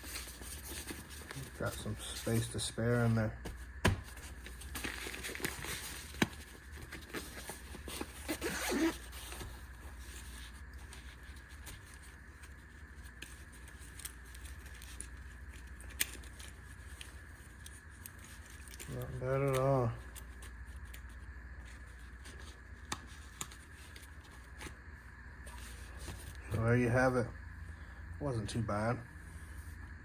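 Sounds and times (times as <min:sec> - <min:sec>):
low steady hum: 0:00.0 - 0:30.0
pouch zipper: 0:08.2 - 0:09.1.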